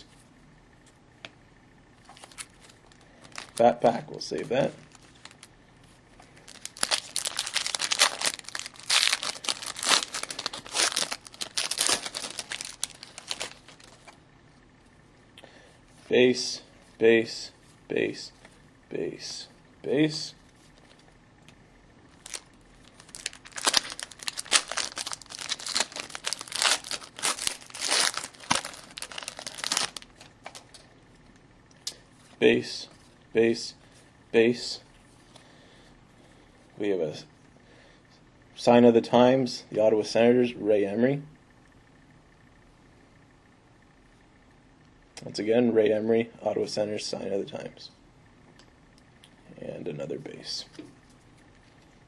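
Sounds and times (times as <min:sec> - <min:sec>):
foil wrappers crinkling: 0:02.1 - 0:03.8, 0:04.8 - 0:05.5, 0:06.4 - 0:14.2, 0:22.1 - 0:30.8.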